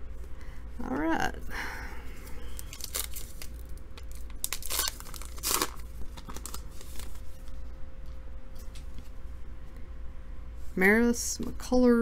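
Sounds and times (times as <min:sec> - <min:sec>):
wrapper tearing and crinkling: 0:02.4 - 0:07.3.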